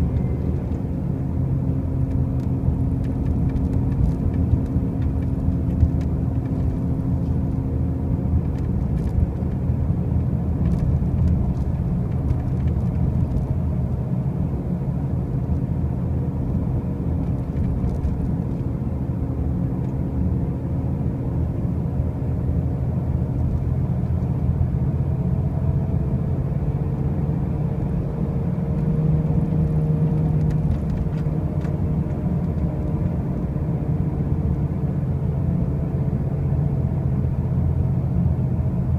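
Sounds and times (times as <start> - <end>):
car driving rumbling drone: 0.0 - 38.9.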